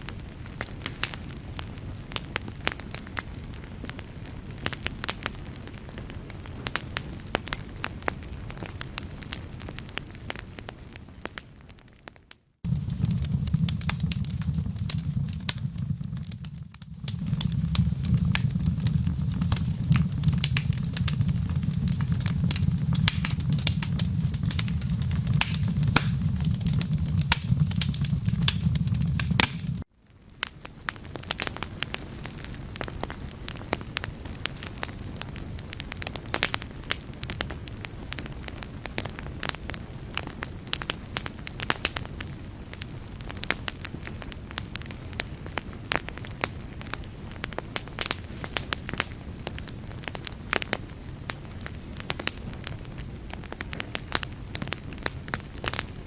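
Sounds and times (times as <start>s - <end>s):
wood fire crackling: 0.1s - 56.0s
low rumble: 12.7s - 29.8s.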